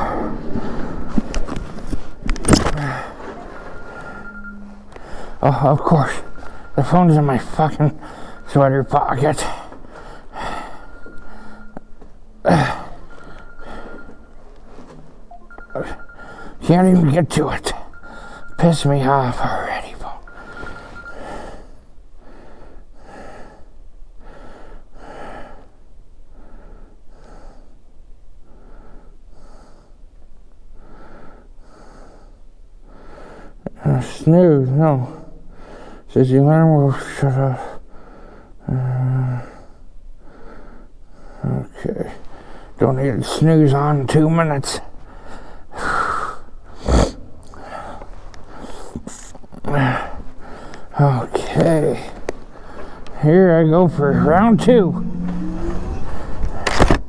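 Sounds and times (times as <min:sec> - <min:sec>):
man breathing hard: 0:00.0 - 0:01.3, 0:02.6 - 0:05.4, 0:06.3 - 0:08.6, 0:09.4 - 0:14.4, 0:20.6 - 0:27.8, 0:28.4 - 0:30.0, 0:30.8 - 0:33.6, 0:35.5 - 0:36.1, 0:37.8 - 0:38.6, 0:39.3 - 0:41.4, 0:45.0 - 0:49.0, 0:50.1 - 0:51.0.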